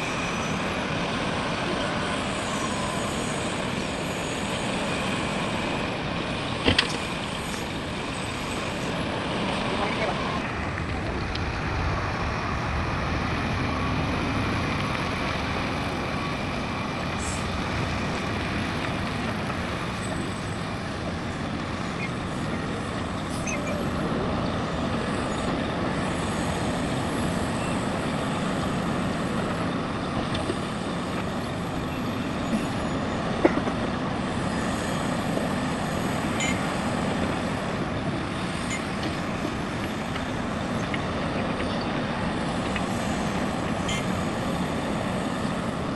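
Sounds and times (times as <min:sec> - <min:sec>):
heavy diesel machinery running: 0:00.0 - 0:45.9
faint high whistles: 0:23.3 - 0:23.8.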